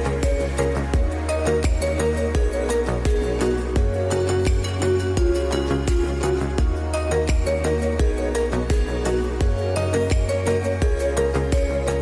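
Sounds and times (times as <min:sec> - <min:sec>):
background music with steady beat: 0:00.0 - 0:12.0.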